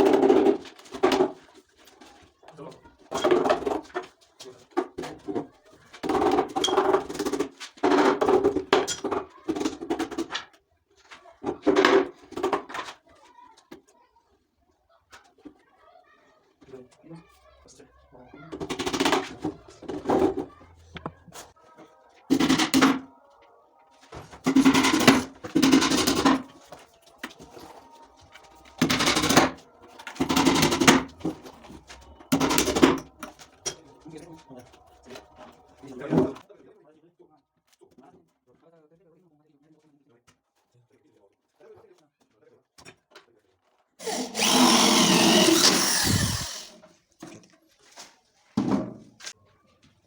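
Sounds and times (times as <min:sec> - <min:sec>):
hand tool stroking wood: 0:44.0 - 0:46.8.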